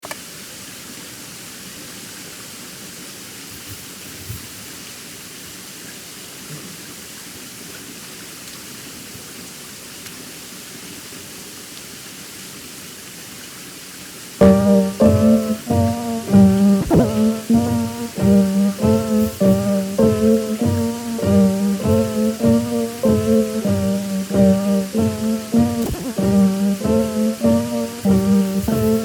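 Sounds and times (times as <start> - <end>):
plucked-string music: 14.4 - 29.0
steady rushing noise: 14.4 - 29.0.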